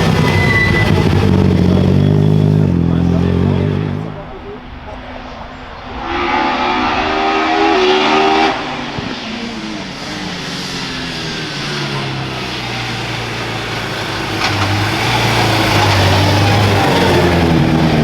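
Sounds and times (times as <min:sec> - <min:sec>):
race car engine at lower pitch: 0:00.0 - 0:18.0
race car engine at high revs: 0:05.8 - 0:18.0.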